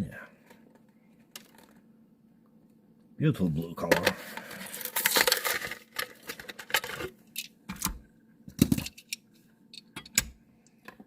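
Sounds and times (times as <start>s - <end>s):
plastic packaging crinkling and tearing: 4.4s - 7.0s.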